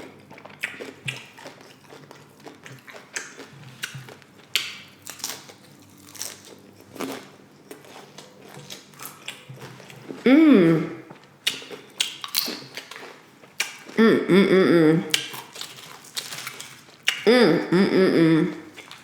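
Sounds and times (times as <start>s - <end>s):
crunching tortilla chips: 0.2s - 9.5s, 15.1s - 17.2s.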